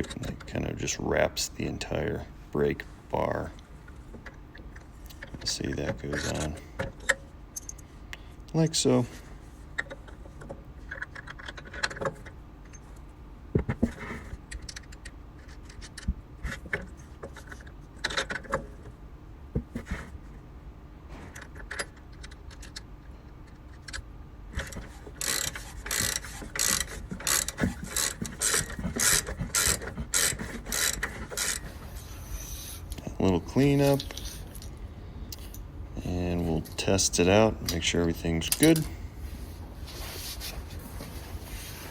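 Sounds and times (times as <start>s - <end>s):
socket ratchet clicking: 25.2s - 31.6s.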